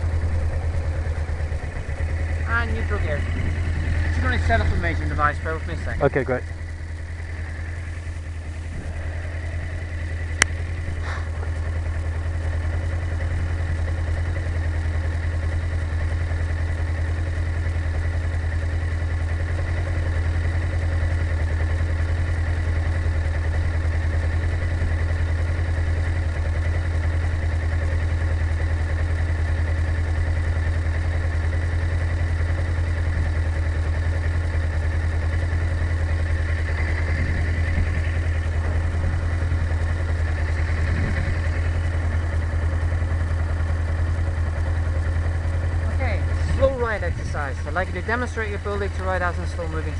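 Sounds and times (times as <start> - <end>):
motorcycle engine idling: 0.0 - 49.9.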